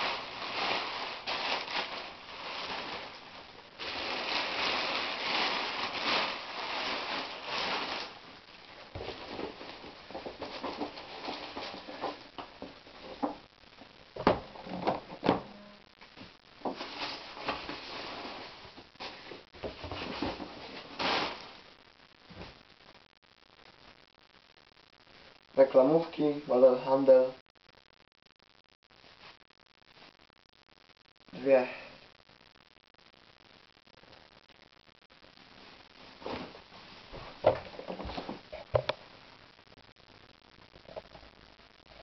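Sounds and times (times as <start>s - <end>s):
plastic packaging crinkling: 0.0s - 13.4s, 16.1s - 21.6s.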